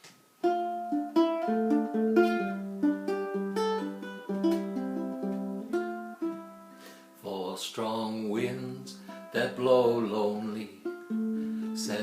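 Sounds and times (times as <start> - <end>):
plucked string instrument fingerpicking: 0.4 - 7.0, 8.2 - 12.0.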